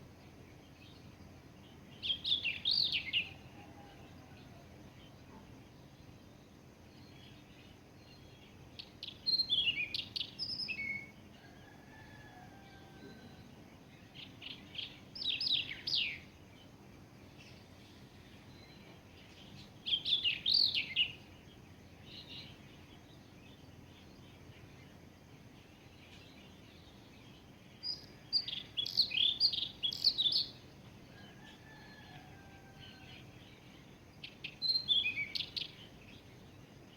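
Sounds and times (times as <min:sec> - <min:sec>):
songbird high chirps: 0:00.0 - 0:36.9.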